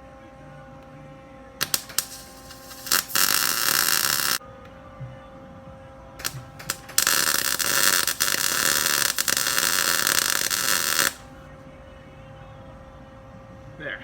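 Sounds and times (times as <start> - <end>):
welding arc crackling: 1.6 - 4.4, 6.2 - 11.3.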